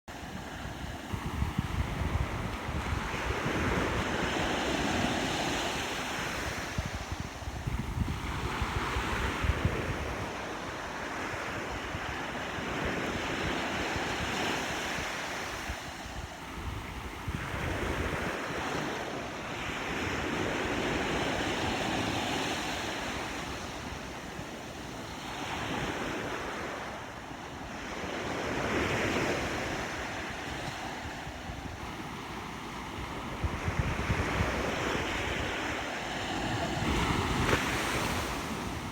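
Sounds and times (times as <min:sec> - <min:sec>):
wind buffeting microphone: 0:00.2 - 0:26.9, 0:27.6 - 0:38.9
sea waves breaking on rocks: 0:35.7 - 0:38.9.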